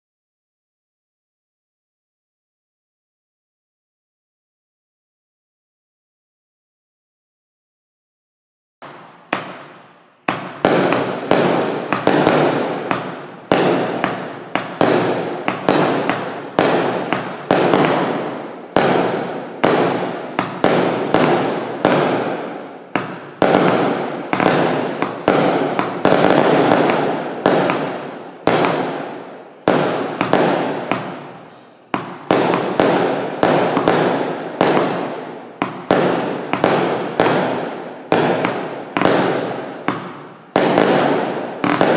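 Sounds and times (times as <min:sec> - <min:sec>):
firework launches and bursts: 0:08.8 - 0:41.9.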